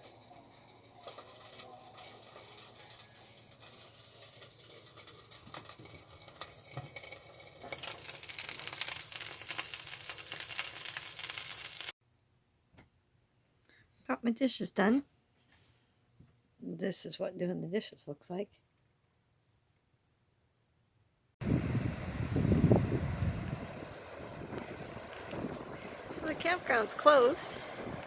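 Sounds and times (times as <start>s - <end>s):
food sizzling in a frying pan: 0.0s - 12.0s.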